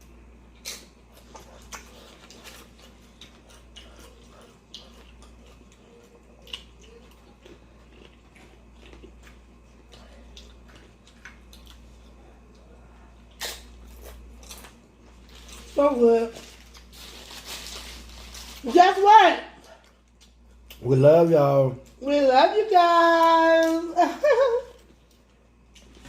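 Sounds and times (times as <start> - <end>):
steady low hum: 0.0 - 26.0
person chewing: 0.5 - 15.8, 19.6 - 20.8.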